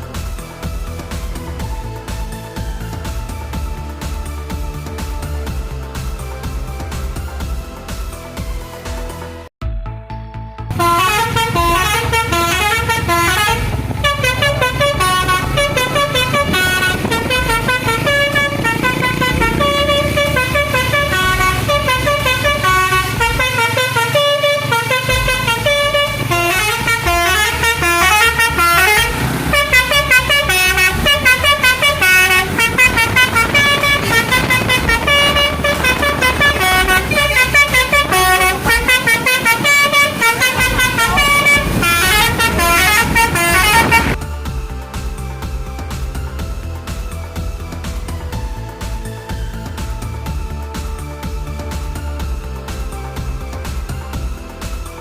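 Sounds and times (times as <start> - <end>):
multi-tone bus horn melody: 10.6 - 44.4
low rumble: 10.7 - 23.6, 24.5 - 54.4.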